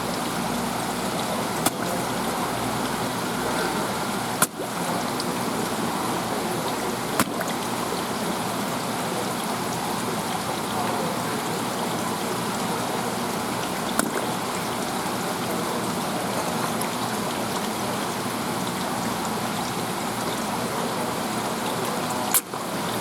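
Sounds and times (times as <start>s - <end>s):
water sloshing: 0.0s - 8.0s, 13.4s - 14.9s.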